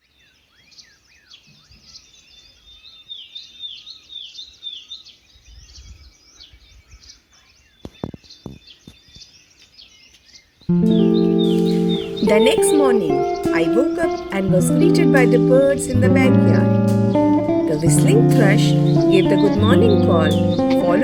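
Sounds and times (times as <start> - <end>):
songbirds chirping: 0.0 - 21.0.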